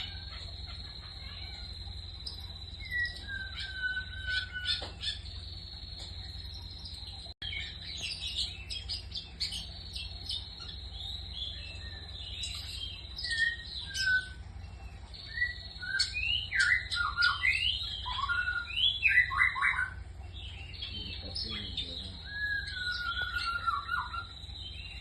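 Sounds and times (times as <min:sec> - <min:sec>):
high cricket-like tone: 0:00.0 - 0:25.0
low hum: 0:00.0 - 0:25.0
bird chirps and sliding whistles: 0:01.2 - 0:05.4, 0:07.4 - 0:14.4, 0:15.2 - 0:20.0, 0:21.4 - 0:25.0.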